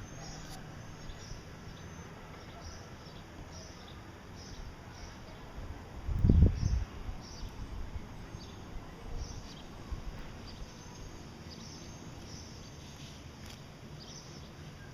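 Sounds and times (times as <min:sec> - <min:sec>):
finches chirping: 0:06.2 - 0:13.2.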